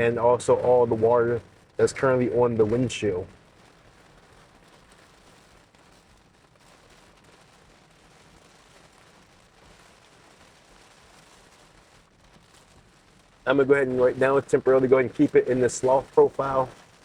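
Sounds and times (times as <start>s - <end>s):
heavy rain: 0.0s - 17.0s
tyres on wet road: 13.4s - 16.9s.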